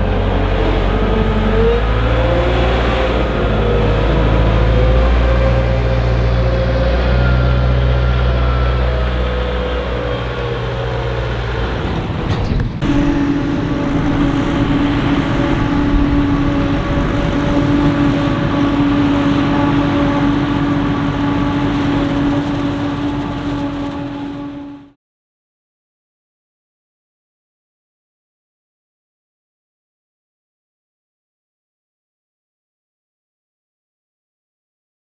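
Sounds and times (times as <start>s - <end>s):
farm machinery diesel engines: 0.0s - 25.0s.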